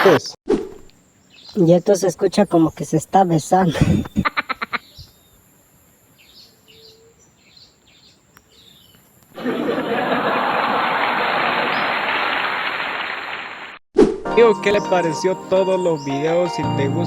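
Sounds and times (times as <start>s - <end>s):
faint bird chirps: 1.1s - 5.5s, 6.1s - 9.1s.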